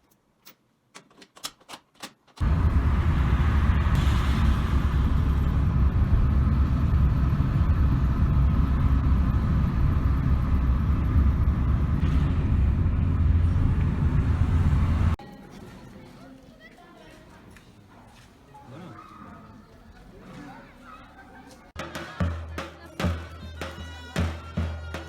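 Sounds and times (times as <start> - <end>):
vehicle engine and road rumble: 2.4 - 15.2.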